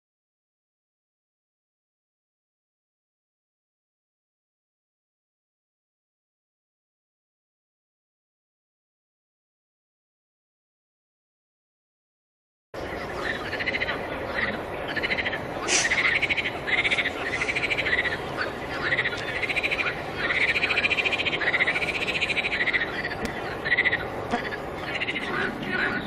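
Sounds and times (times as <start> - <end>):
frogs calling: 12.8 - 26.0.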